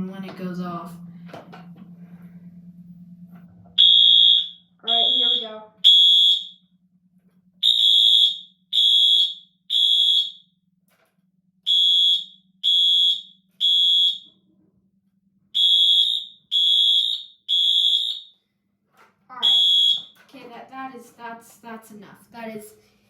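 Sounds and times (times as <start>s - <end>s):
fire alarm horns blaring: 3.8s - 6.9s, 7.6s - 10.6s, 11.6s - 14.5s, 15.5s - 18.5s, 19.3s - 20.3s.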